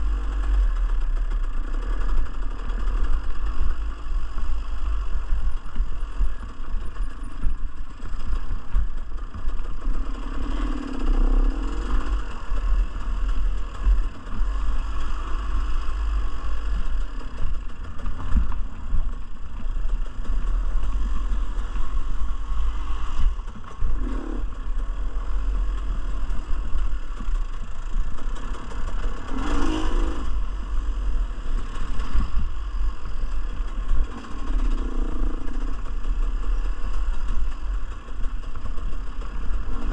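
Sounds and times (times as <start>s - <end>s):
dirt bike engine revving: 9.9s - 17.8s, 20.3s - 26.9s, 27.7s - 36.9s.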